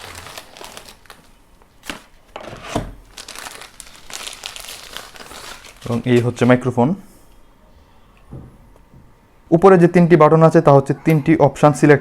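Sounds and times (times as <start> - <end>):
packaging crinkling and rustling: 0.0 - 6.7.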